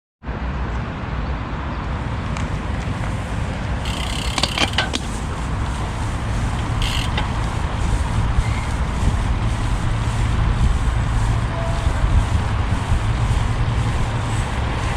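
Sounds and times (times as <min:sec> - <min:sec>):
road bike rolling noise: 0:01.7 - 0:14.9
wind rumble: 0:01.9 - 0:14.9
bike rattling clicks: 0:03.8 - 0:10.0.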